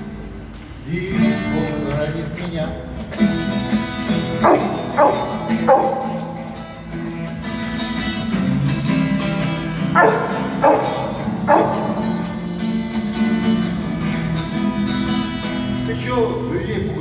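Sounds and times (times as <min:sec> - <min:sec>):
acoustic guitar strumming: 0:00.0 - 0:16.7
dog barking: 0:04.4 - 0:06.8, 0:09.9 - 0:12.5.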